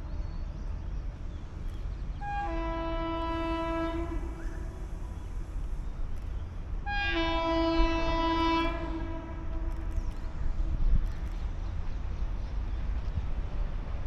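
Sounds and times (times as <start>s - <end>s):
train running rumble: 0.0s - 14.0s
train horn blast: 2.2s - 5.3s, 6.8s - 10.1s.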